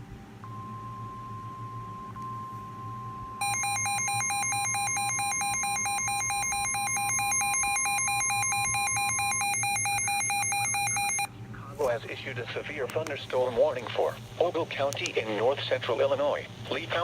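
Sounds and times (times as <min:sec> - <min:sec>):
steady alarm tone: 0:01.0 - 0:11.3
rapidly pulsing alert beep: 0:03.4 - 0:11.3.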